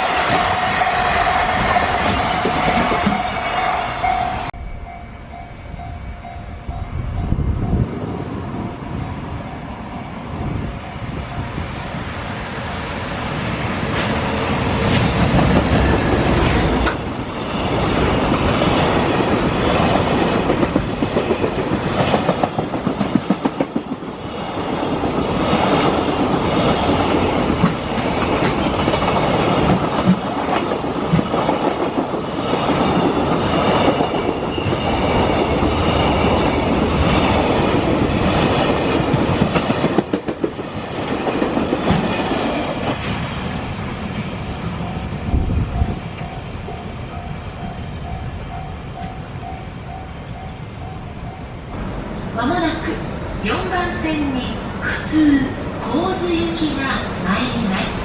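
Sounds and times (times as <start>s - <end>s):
train wheels clacking on rails: 13.8s - 51.5s.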